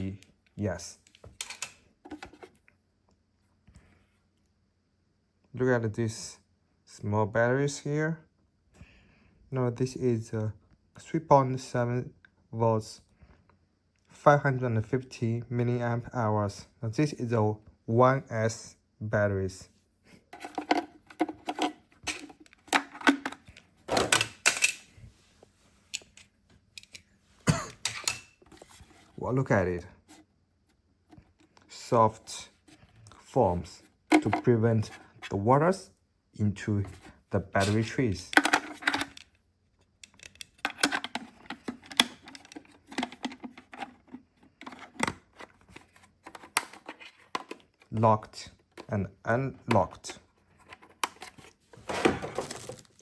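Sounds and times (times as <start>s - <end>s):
small hard parts clicking and rattling: 37.6s - 39.4s, 40.0s - 47.6s
small plastic parts clicking: 40.0s - 43.9s.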